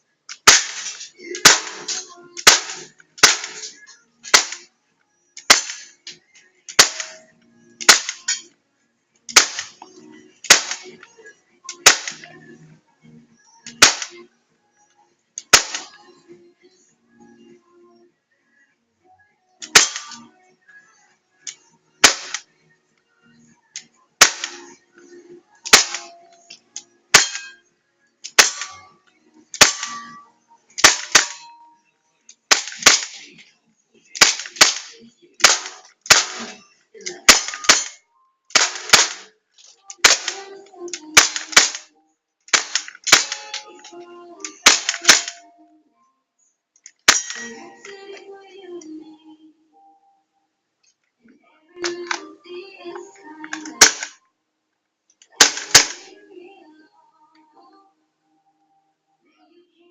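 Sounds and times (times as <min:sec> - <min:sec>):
air gun single shots: 0:00.4 - 0:03.7, 0:04.3 - 0:04.7, 0:05.5 - 0:06.0, 0:06.7 - 0:07.2, 0:22.0 - 0:22.4, 0:38.6 - 0:39.3, 0:44.6 - 0:45.4.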